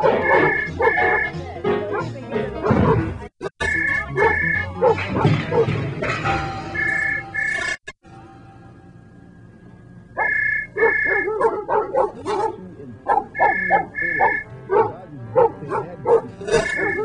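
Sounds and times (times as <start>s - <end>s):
dog yipping and barking: 0.0s - 1.3s, 3.7s - 5.6s, 10.2s - 17.0s
high electronic tones: 0.0s - 1.3s, 3.5s - 4.7s, 6.7s - 7.8s, 10.2s - 11.3s, 13.4s - 14.5s, 16.4s - 17.0s.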